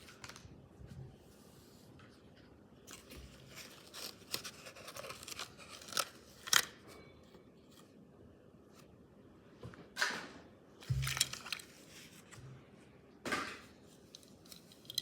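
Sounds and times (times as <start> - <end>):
packaging crackling: 2.9 - 6.8, 10.9 - 11.7.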